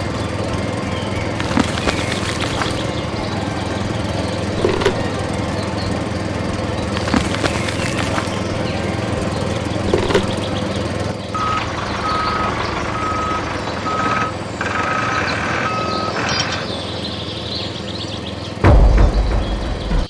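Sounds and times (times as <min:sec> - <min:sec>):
steady motor hum: 0:00.0 - 0:20.0
high electronic beeping: 0:11.3 - 0:16.7
loud low thump: 0:18.6 - 0:20.0.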